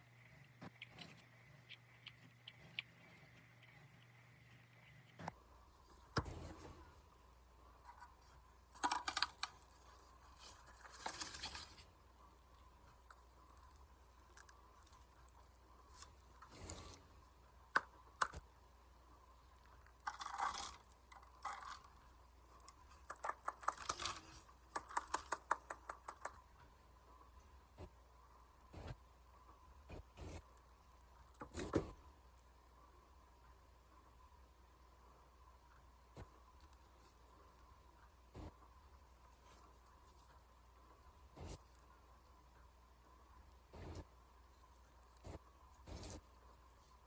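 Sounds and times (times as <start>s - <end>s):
small clicks and rattles: 19.4s - 26.5s.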